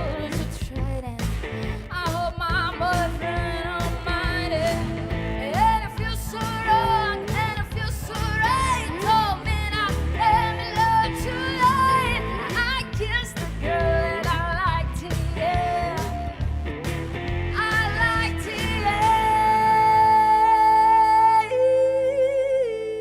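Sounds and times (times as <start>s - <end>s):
woman singing slow melody: 1.9s - 16.4s, 17.6s - 23.0s.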